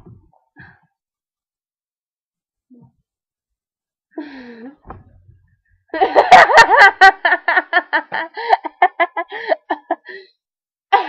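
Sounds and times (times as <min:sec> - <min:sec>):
girls laughing: 0:06.0 - 0:10.1.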